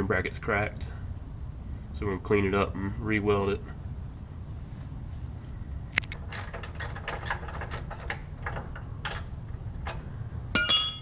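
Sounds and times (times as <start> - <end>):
ringing metal clank: 10.5 - 11.0.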